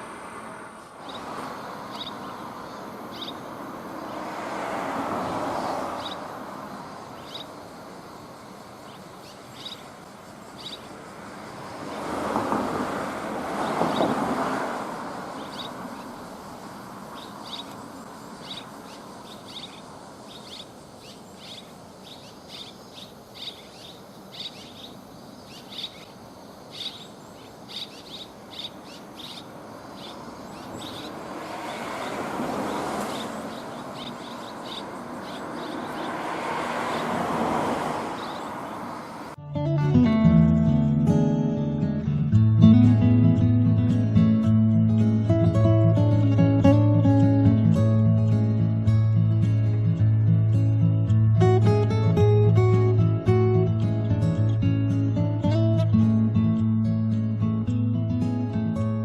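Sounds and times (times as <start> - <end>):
passing traffic: 0.0 - 59.0
swallows chirping: 1.0 - 4.2, 5.6 - 7.6, 8.2 - 11.0, 15.3 - 37.2, 37.9 - 39.3.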